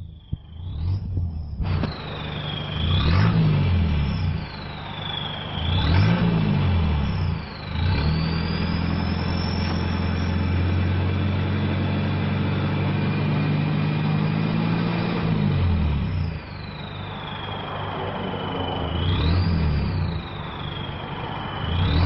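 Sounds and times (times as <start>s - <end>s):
diesel engine revving: 0.0s - 22.0s
turbo whistle: 1.6s - 11.2s, 16.0s - 22.0s.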